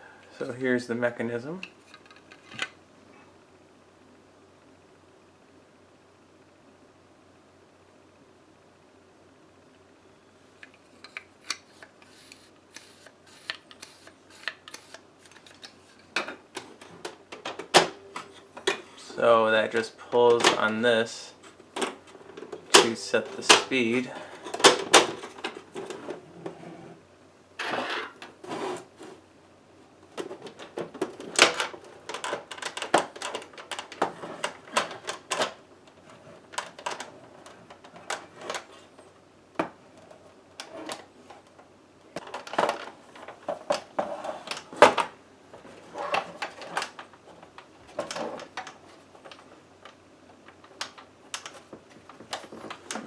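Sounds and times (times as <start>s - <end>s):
hard plastic parts clicking and rattling: 1.6s - 2.8s, 10.6s - 19.0s, 20.1s - 26.2s, 30.1s - 39.0s, 42.2s - 53.0s.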